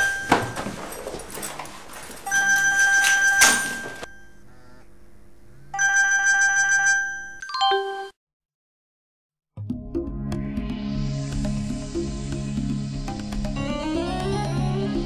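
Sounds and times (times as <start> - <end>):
telephone ringing: 0.0 - 0.8, 2.3 - 4.8, 5.8 - 8.1.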